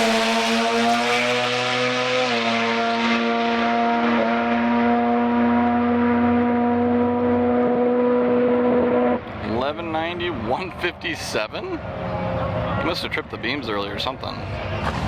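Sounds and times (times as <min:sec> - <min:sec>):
drag car engine at high revs: 0:00.0 - 0:09.2.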